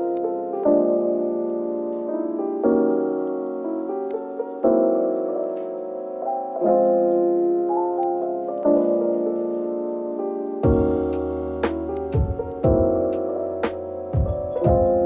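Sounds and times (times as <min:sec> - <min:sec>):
soft piano music: 0:00.0 - 0:15.0.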